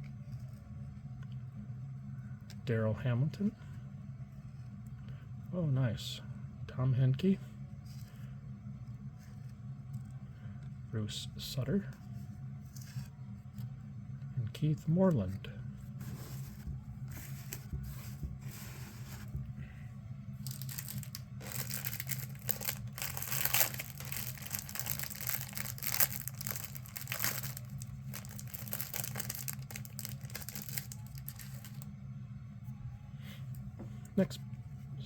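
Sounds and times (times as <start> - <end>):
steady low hum: 0.0 - 35.0
plastic wrapper crinkling and tearing: 20.4 - 31.9.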